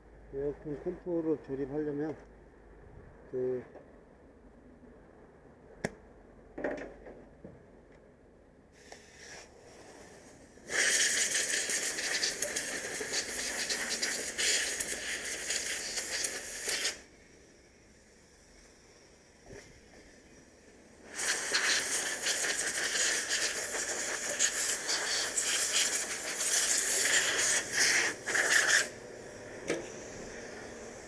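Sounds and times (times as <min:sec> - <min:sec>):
loud rushing hiss: 0:10.6 - 0:17.2, 0:21.0 - 0:31.0.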